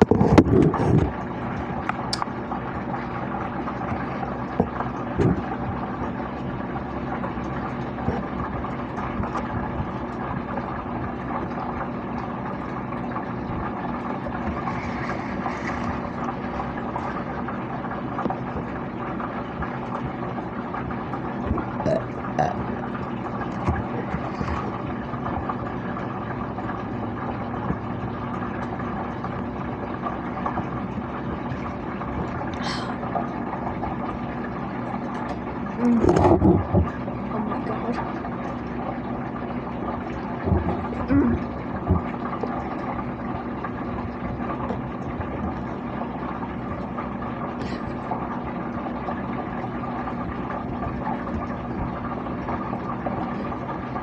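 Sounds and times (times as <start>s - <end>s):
steady hum: 0.0s - 54.0s
person gulping soda: 21.5s - 25.6s, 35.1s - 37.0s, 40.0s - 43.2s.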